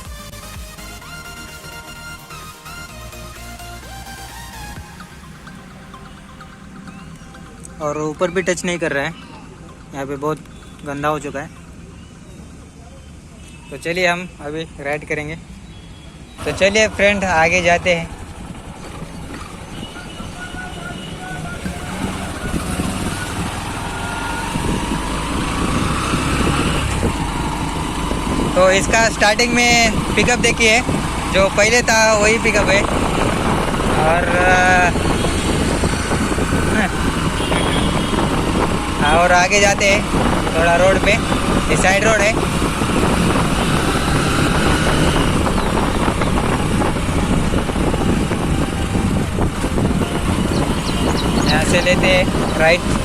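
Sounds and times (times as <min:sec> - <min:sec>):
motorcycle engine accelerating: 0:16.3 - 0:53.0
wind rushing over microphone: 0:21.5 - 0:53.0.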